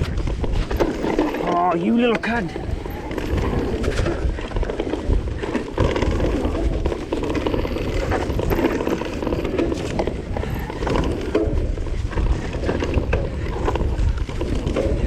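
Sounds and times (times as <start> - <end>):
rumble: 0.0 - 1.6, 2.4 - 15.0
bike rattles and knocks: 0.0 - 15.0
bike tyre noise: 0.0 - 15.0.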